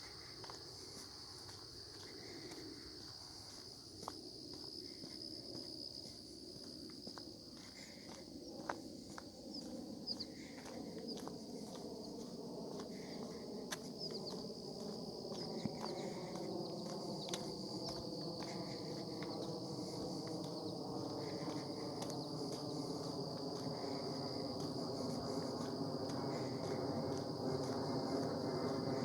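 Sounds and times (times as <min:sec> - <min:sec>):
crickets chirping: 0:00.0 - 0:29.0
low droning hum: 0:06.8 - 0:29.0.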